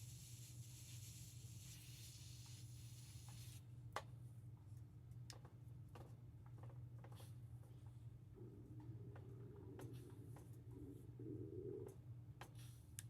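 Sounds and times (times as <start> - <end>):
faint hiss: 0.0 - 3.6
low room hum: 0.0 - 13.0.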